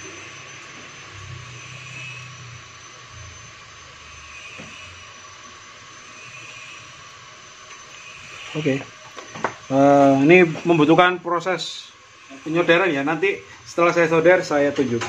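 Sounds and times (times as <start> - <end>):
even hiss: 9.7 - 14.9.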